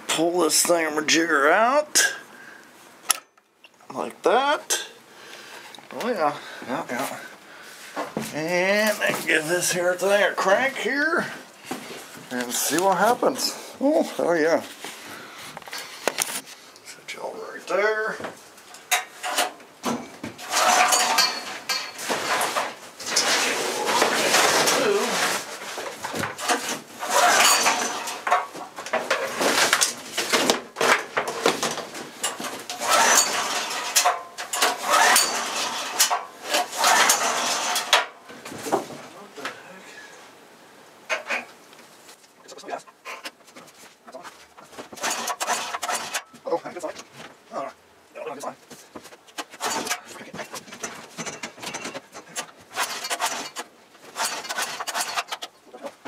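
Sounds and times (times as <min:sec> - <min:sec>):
scraping and rubbing: 0:20.2 - 0:39.1, 0:41.1 - 0:47.4, 0:48.5 - 0:56.0
generator pull-start cranking: 0:20.4 - 0:24.8, 0:26.3 - 0:28.5, 0:30.9 - 0:38.1, 0:44.9 - 0:46.3, 0:49.4 - 0:55.6.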